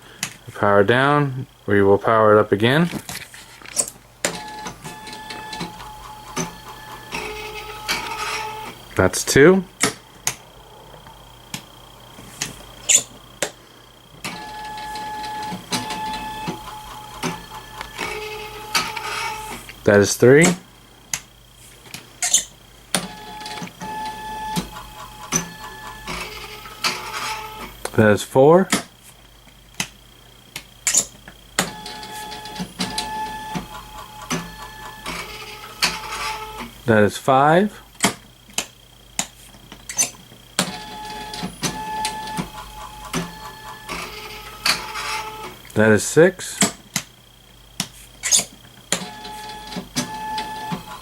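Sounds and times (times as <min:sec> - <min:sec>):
robot motors whining: 0:03.7 - 0:20.6, 0:22.2 - 0:28.0, 0:30.8 - 0:37.2, 0:39.9 - 0:46.6, 0:48.2 - 0:51.0.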